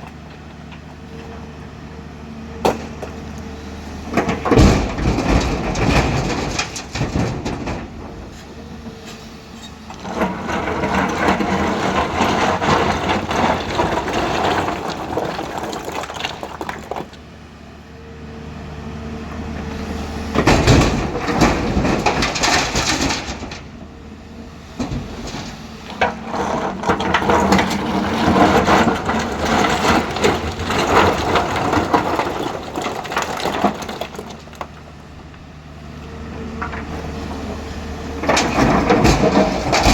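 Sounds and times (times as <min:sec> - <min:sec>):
diesel engine running: 0:00.0 - 0:39.9
rocks scraping and clattering: 0:02.6 - 0:17.2, 0:20.2 - 0:35.4, 0:36.0 - 0:39.9
loud crash: 0:38.2 - 0:39.9.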